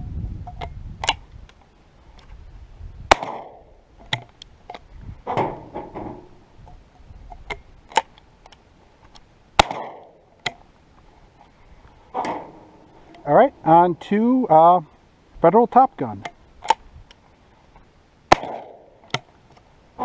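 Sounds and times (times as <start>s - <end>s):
shotgun firing: 3.1s - 3.7s, 9.6s - 10.2s, 18.3s - 18.9s
shotgun clicks and cracks: 3.1s - 4.8s, 7.5s - 10.6s, 18.3s - 19.3s.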